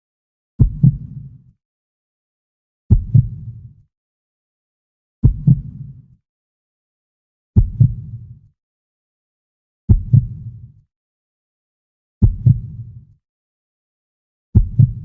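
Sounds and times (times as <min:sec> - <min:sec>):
heartbeat thumps: 0:00.6 - 0:01.0, 0:02.9 - 0:03.4, 0:05.2 - 0:05.7, 0:07.6 - 0:08.1, 0:09.9 - 0:10.4, 0:12.2 - 0:12.8, 0:14.6 - 0:15.0.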